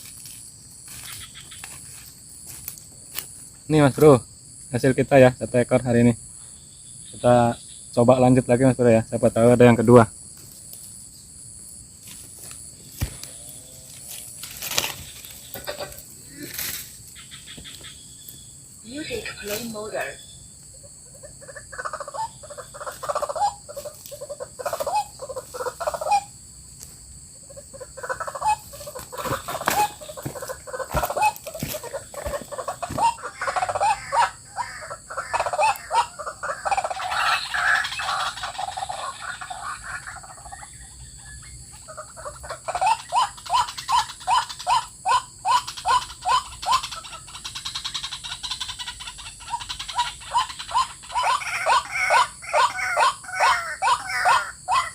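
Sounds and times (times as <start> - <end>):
waterhen calling: 18.8 - 20.2, 27.5 - 54.9.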